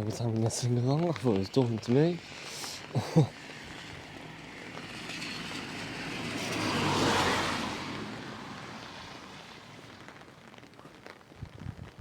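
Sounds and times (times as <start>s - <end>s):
car tyres hissing on wet road: 1.2s - 10.8s.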